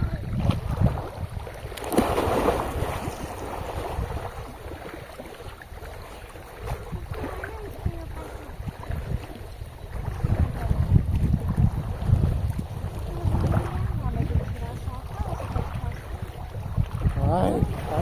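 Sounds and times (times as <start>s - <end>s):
splashing water: 0.0s - 18.0s
wind buffeting microphone: 0.0s - 18.0s.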